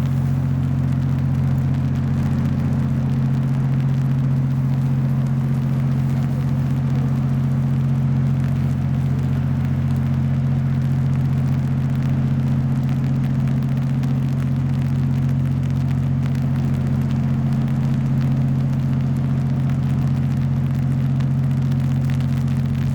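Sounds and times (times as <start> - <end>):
engine drone: 0.0 - 22.9.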